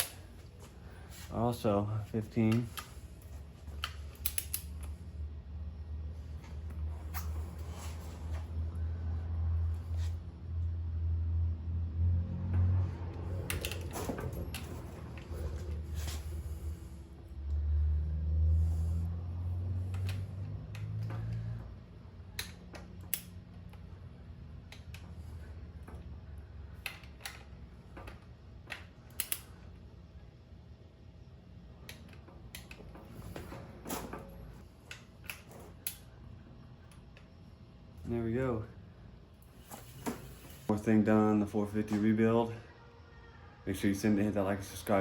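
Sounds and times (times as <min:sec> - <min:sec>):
tools clicking and knocking: 0:03.8 - 0:04.9.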